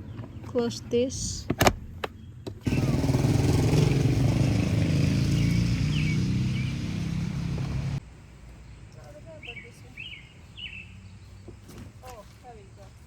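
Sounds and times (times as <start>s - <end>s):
vehicle engine humming: 2.6s - 13.0s.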